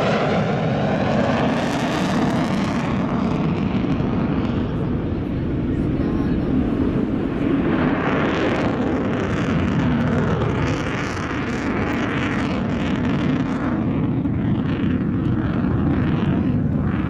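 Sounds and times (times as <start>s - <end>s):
jet engine rumble: 0.0s - 17.0s.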